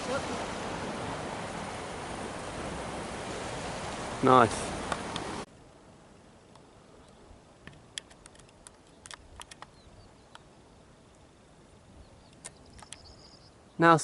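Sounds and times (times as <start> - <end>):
small clicks and ticks: 6.5 - 10.5, 12.3 - 13.1.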